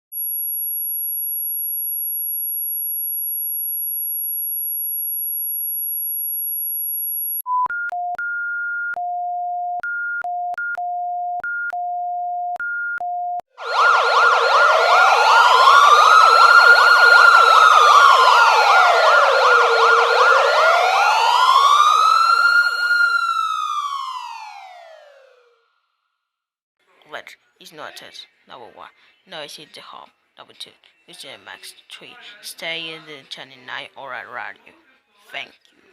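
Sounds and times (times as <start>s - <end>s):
high-pitched steady alert tone: 13.6s - 25.3s
wailing siren over harsh buzzing: 13.6s - 25.5s
beeps alternating high and low: 14.1s - 23.6s.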